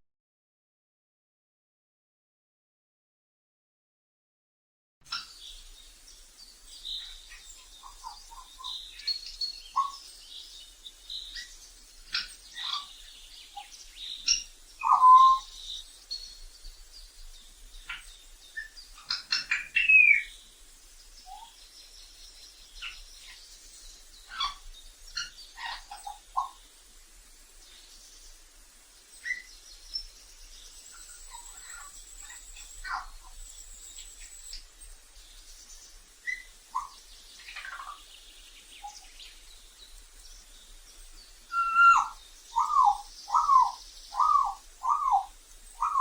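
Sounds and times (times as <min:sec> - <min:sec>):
parrot whistles and squawks: 0:41.5 - 0:45.2.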